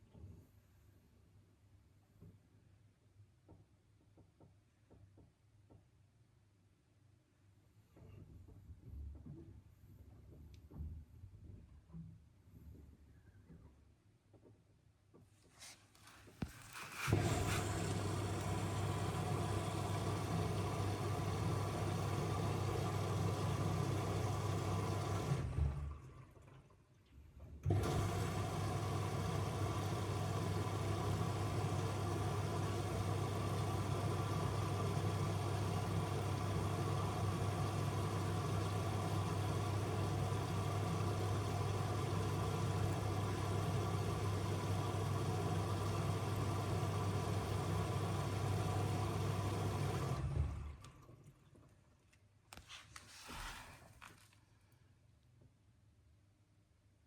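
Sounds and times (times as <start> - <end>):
washing machine filling with water: 16.5 - 52.0.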